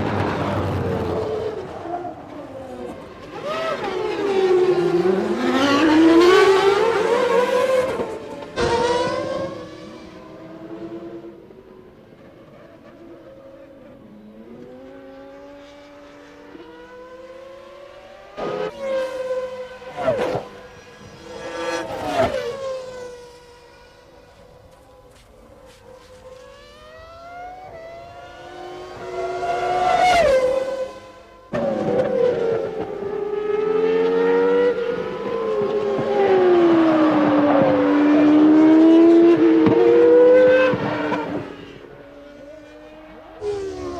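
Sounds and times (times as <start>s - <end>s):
racing car engines passing at high revs: 0.0s - 43.9s.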